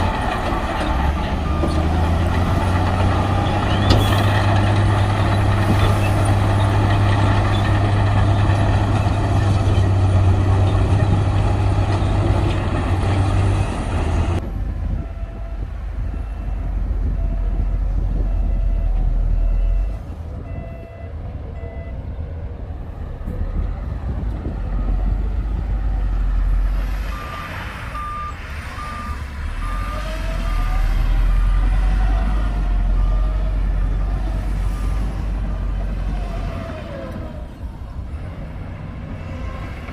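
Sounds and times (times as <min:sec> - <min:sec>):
heavy diesel machinery engine: 0:00.0 - 0:39.9
reversing alarm beeping: 0:14.9 - 0:22.0, 0:27.1 - 0:31.9.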